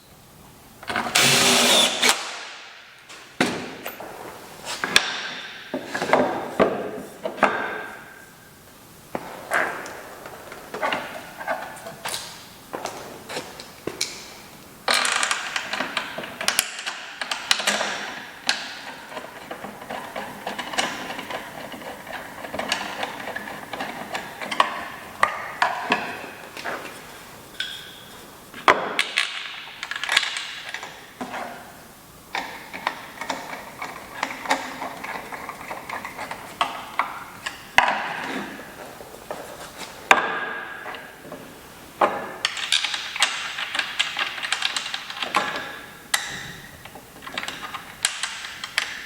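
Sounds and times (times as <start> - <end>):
wooden parts knocking and scraping: 3.1 - 8.0, 14.9 - 27.9, 32.3 - 49.0.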